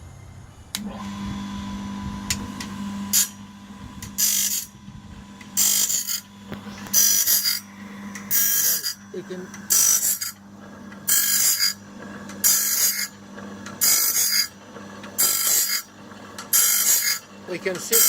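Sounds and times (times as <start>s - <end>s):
electric motor humming: 0.6s - 18.0s
grinding wheel on blade teeth: 4.1s - 4.8s, 5.6s - 18.0s.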